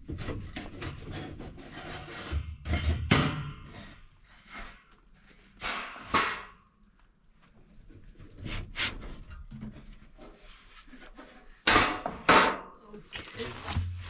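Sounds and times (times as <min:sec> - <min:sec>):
knocks and clunks of handling: 0:11.1 - 0:14.0.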